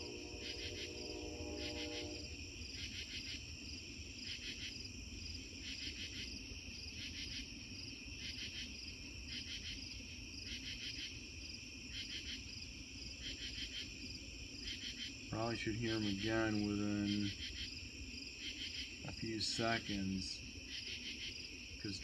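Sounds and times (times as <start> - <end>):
distant train horn: 0.0 - 2.4
crickets chirping: 0.0 - 22.0.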